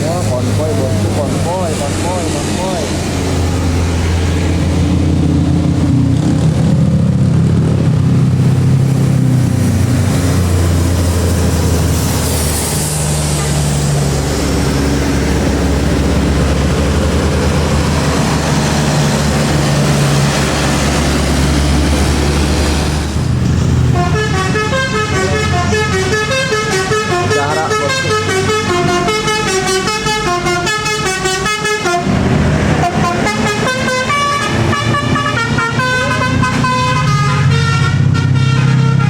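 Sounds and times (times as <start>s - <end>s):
diesel bus engines droning: 0.0s - 39.0s.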